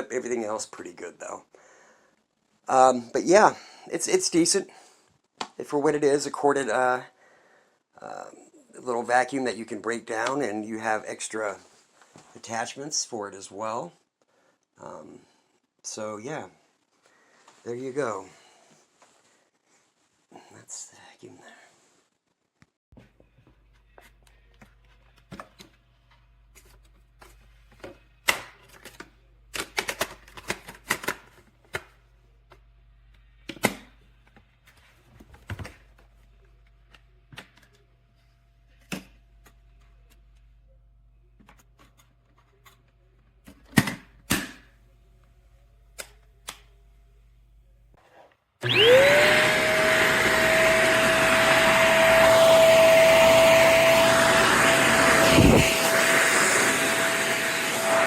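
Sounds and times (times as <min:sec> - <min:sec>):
vacuum cleaner motor whine: 0:48.6 - 0:58.0
rushing air: 0:51.5 - 0:58.0.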